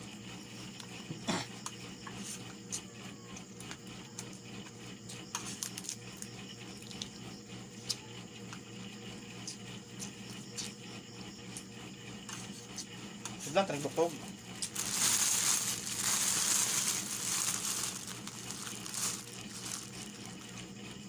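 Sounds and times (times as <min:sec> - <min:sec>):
steady low hum: 0:14.1 - 0:21.0.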